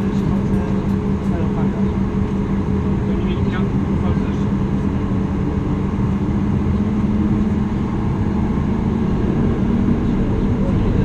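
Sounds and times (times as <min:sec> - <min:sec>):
airplane engines and airflow rush: 0:00.0 - 0:11.0
constant low hum: 0:00.0 - 0:11.0.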